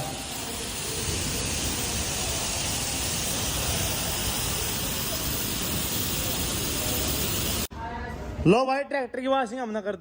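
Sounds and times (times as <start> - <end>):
water spray hissing: 0.0 - 7.7.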